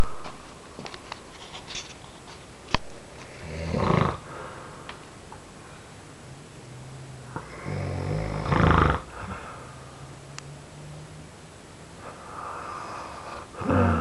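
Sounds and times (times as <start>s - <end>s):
man snoring: 3.4s - 4.3s, 7.3s - 9.6s, 12.3s - 14.0s.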